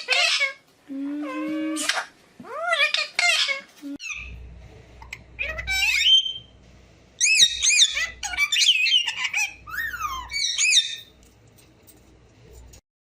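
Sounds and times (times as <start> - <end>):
parrot whistling: 5.4 - 6.5, 7.2 - 11.1.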